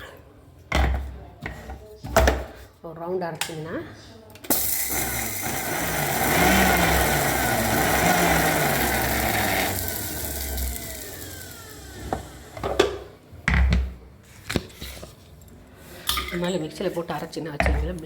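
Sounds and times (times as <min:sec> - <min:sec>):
mixer grinder grinding salt: 0:04.5 - 0:12.6
motor winding down whine: 0:04.9 - 0:12.6.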